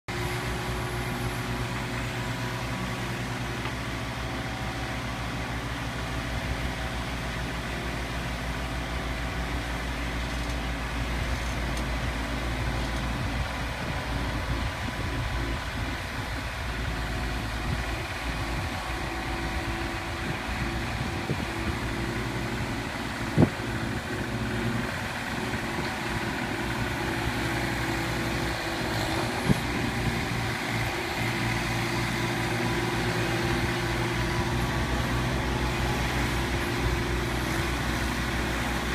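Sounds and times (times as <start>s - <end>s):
loader engine running: 0.1s - 38.9s.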